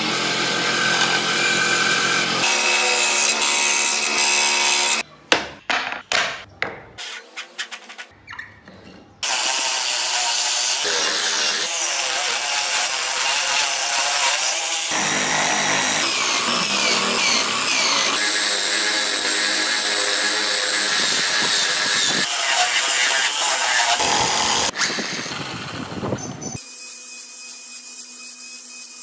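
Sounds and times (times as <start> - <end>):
power tool grinding wood: 0.0 - 5.0, 9.2 - 26.7.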